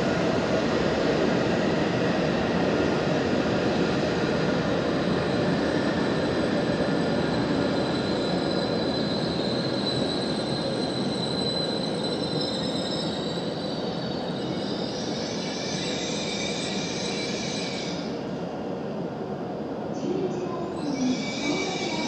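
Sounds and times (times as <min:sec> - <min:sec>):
train running at low speed: 0:00.0 - 0:22.0
high squealing wheels and brakes: 0:04.9 - 0:18.2, 0:20.7 - 0:22.0.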